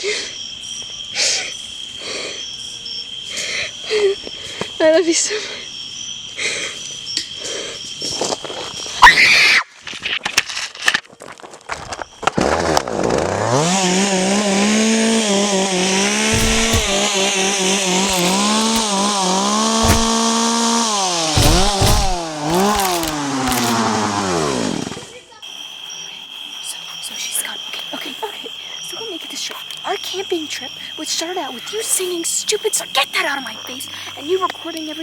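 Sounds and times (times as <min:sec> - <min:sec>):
chainsaw engine revving: 0:16.3 - 0:17.0, 0:18.0 - 0:19.0, 0:19.8 - 0:20.3, 0:21.4 - 0:23.9.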